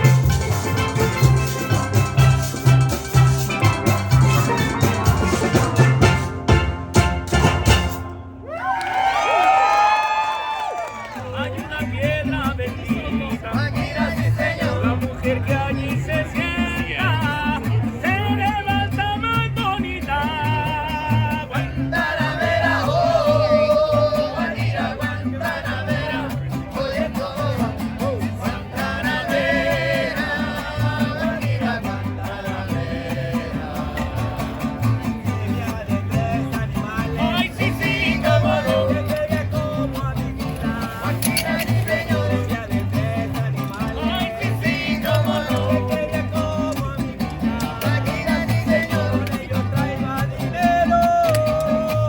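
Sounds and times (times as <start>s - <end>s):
live band music: 0.0s - 8.4s.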